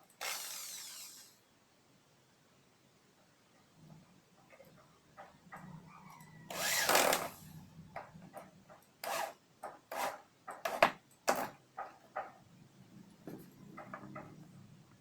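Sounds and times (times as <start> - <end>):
knocks and clicks of tools: 13.2 - 14.7.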